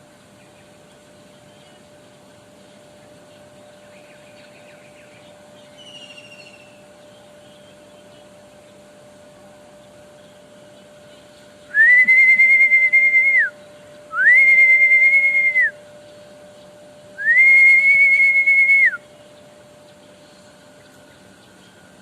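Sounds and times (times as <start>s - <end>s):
bird whistling: 4.0s - 6.8s, 11.6s - 16.3s, 17.2s - 19.2s.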